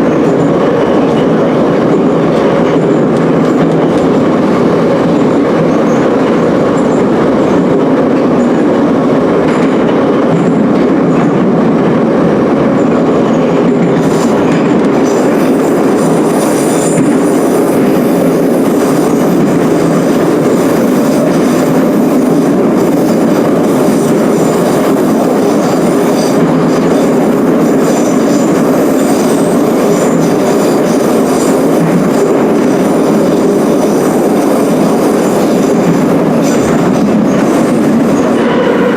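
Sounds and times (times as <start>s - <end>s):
train wheels rumbling on rail: 0.0s - 38.9s
high wheel squeal: 14.0s - 18.5s, 36.4s - 38.9s.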